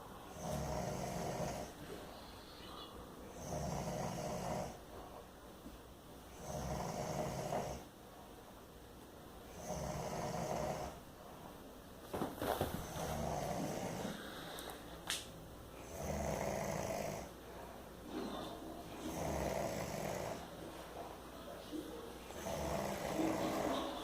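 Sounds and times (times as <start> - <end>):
man snoring: 0.3 - 1.8, 3.3 - 4.8, 6.3 - 7.8, 9.5 - 11.0, 13.1 - 14.3, 15.8 - 17.3, 19.0 - 20.5, 22.3 - 23.8.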